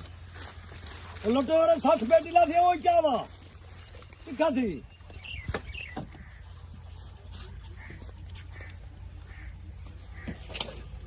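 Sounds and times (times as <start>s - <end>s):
bird calling: 3.5s - 11.0s.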